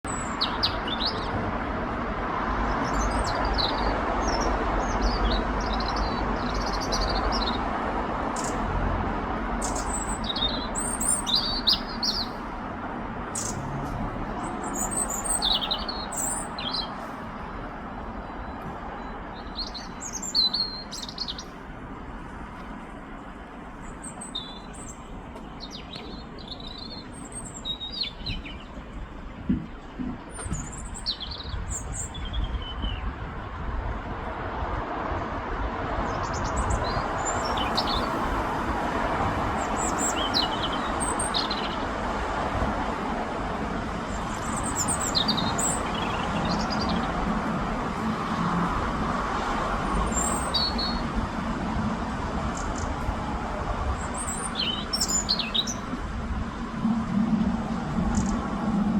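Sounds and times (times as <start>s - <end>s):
robin singing: 0.0s - 1.4s, 9.6s - 12.5s, 13.3s - 21.7s, 23.8s - 29.0s, 29.6s - 33.1s, 36.1s - 38.3s, 39.6s - 42.0s, 44.1s - 47.2s, 49.9s - 51.1s, 54.0s - 55.9s
traffic rumble: 0.0s - 58.9s.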